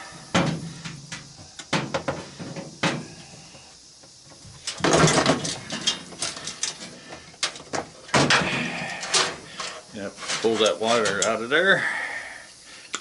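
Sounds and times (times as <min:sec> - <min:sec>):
rattling scrape: 0:09.0 - 0:11.3.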